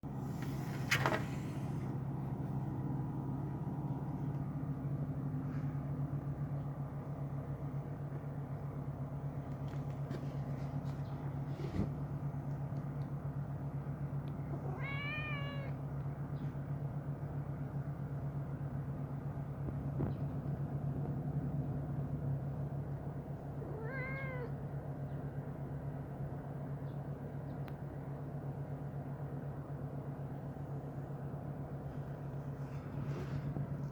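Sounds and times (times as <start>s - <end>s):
low rumbling hum: 0.0s - 33.9s
cat meowing: 14.5s - 15.8s, 23.6s - 24.6s.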